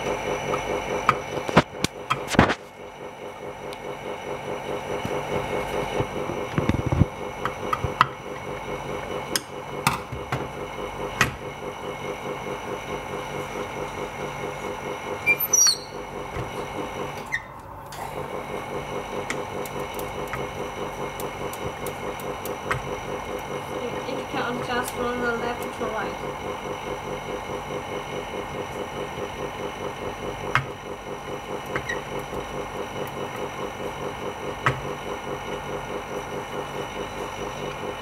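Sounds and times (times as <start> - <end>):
machine pulsing hum: 0.0 - 38.0
short squeak: 15.2 - 16.0.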